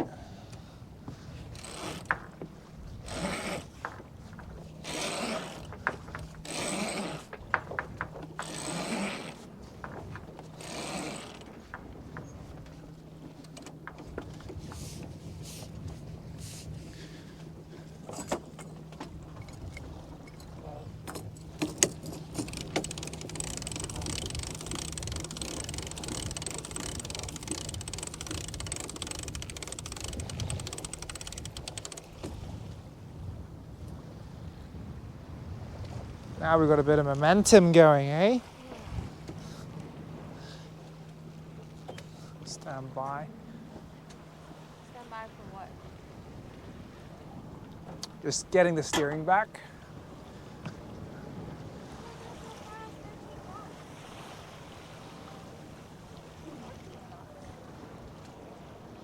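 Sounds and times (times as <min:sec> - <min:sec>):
wind and water rushing: 0:00.0 - 0:59.0
winch grinding whirr: 0:01.0 - 0:33.0
ratchet clicks: 0:01.6 - 0:02.2, 0:04.9 - 0:07.6, 0:08.4 - 0:09.4, 0:10.6 - 0:11.5, 0:21.6 - 0:32.4.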